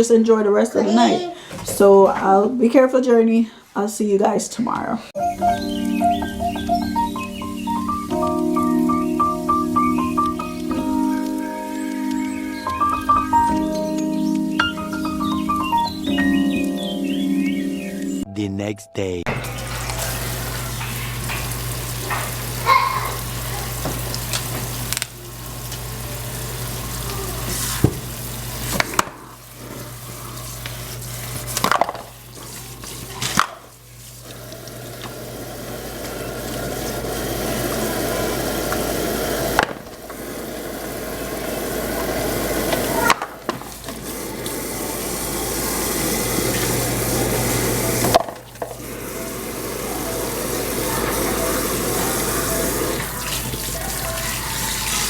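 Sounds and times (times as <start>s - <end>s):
pots and utensils clinking: 19.3s - 26.0s, 27.4s - 55.0s
hiss of cooking or water: 19.4s - 55.0s.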